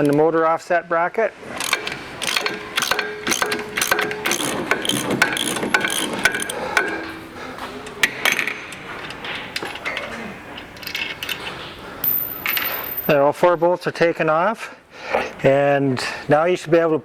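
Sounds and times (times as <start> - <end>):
ratchet wrench clicking: 1.6 - 6.9.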